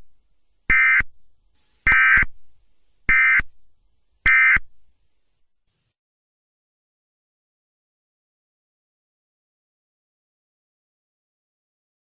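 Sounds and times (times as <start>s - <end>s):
digital data tone bursts: 1.8s - 2.3s, 3.1s - 3.4s.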